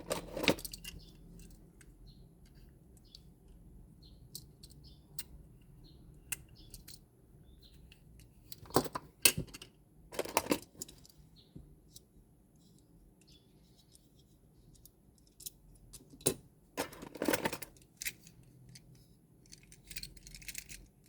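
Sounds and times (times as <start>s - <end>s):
toy parts clattering: 0.0s - 3.6s, 6.3s - 7.1s, 7.8s - 11.2s, 13.2s - 21.0s
toy parts clicking: 0.0s - 3.6s, 6.2s - 7.0s, 14.7s - 21.0s.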